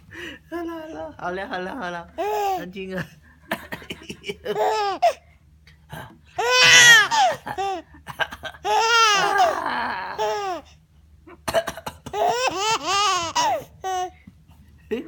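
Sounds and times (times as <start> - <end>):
baby laughing: 3.7 - 5.2, 6.4 - 10.6, 12.1 - 14.1.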